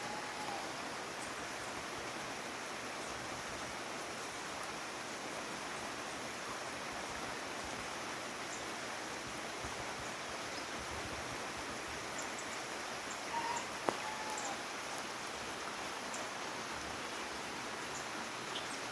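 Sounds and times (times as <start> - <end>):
light rain falling: 0.0 - 18.9
faint bird chirps: 17.9 - 18.9.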